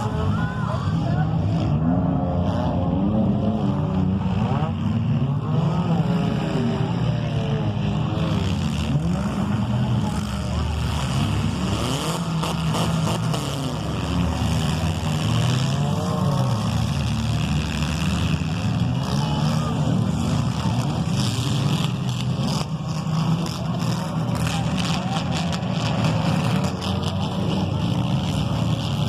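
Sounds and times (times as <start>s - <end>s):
car engines revving: 0.0s - 29.0s.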